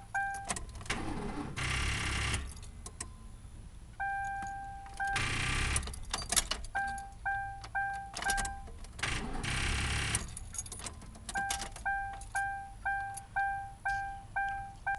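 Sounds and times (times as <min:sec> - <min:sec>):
car warning chime dinging: 0:00.0 - 0:00.7, 0:04.0 - 0:14.9.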